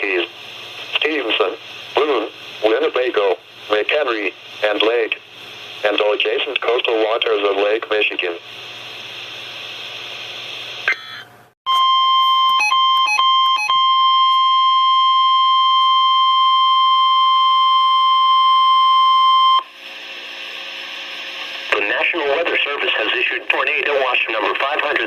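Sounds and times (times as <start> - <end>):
radio hiss: 0.0 - 10.8, 19.8 - 25.0
steady high alarm beep: 11.7 - 19.7.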